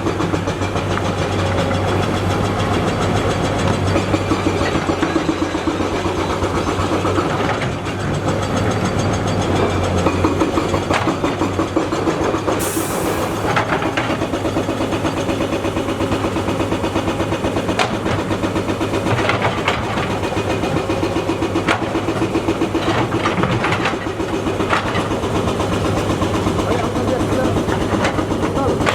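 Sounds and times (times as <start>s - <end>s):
excavator diesel engine running: 0.0s - 28.9s
brief hiss: 12.6s - 13.5s
knocks and clanks: 17.7s - 28.9s.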